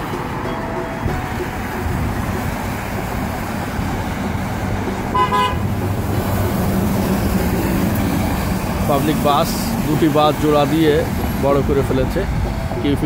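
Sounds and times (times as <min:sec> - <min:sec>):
road traffic: 0:00.0 - 0:13.0
car horn toot: 0:05.1 - 0:05.7.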